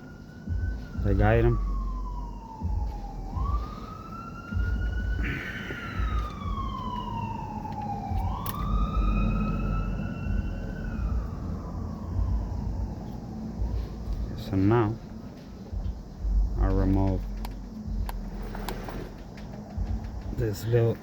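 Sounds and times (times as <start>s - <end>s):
siren wailing: 0.0s - 20.7s
sharp click: 7.8s - 8.6s.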